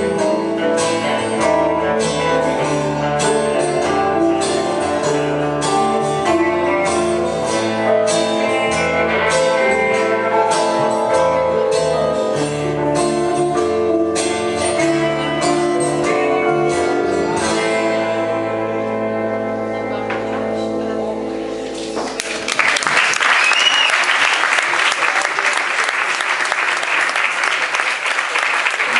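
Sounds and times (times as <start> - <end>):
strummed acoustic guitar: 0.0 - 22.5
live band playing: 0.0 - 28.8.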